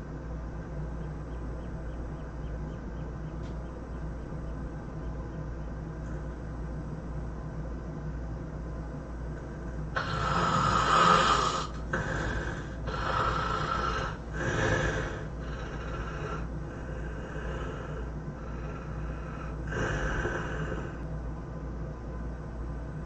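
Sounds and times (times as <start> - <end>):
steady low hum: 0.0 - 23.0
person snoring: 10.0 - 21.0.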